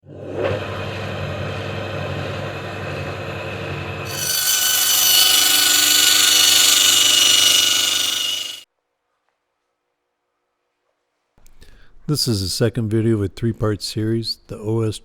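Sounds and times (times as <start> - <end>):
sawmill engine running: 0.6 - 8.6
saw cutting into log: 4.1 - 8.6.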